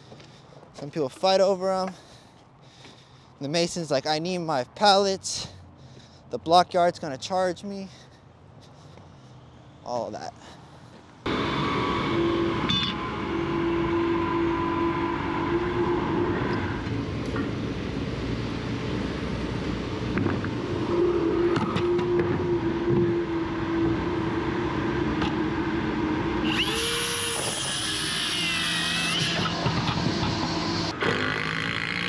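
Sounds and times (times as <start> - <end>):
small engine humming: 11.3 - 32.0.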